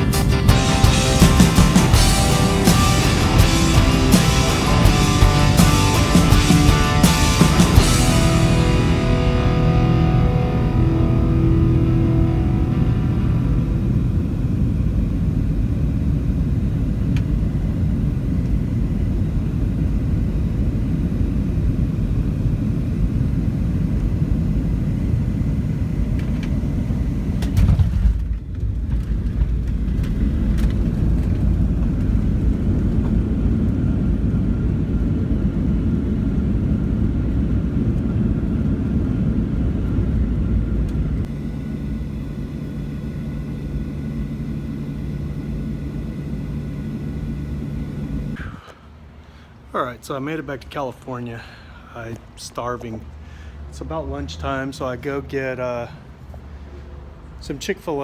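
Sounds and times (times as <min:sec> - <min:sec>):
vehicle interior rumble: 0:00.0 - 0:17.7, 0:40.6 - 0:48.4
steady hum: 0:00.0 - 0:53.8.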